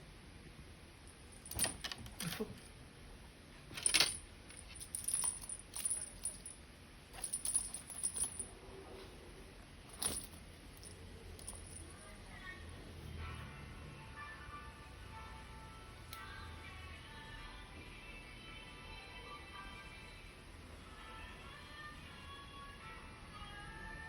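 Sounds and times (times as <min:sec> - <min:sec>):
cat toy jingling and clinking: 0:03.7 - 0:06.6, 0:07.2 - 0:08.5, 0:09.9 - 0:12.2.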